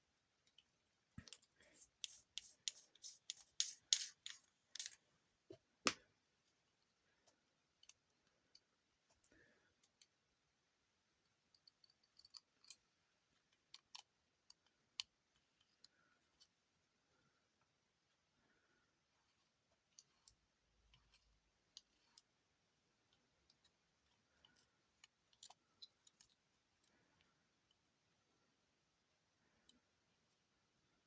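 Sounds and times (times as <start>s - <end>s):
small objects clicking: 0.5s - 5.0s.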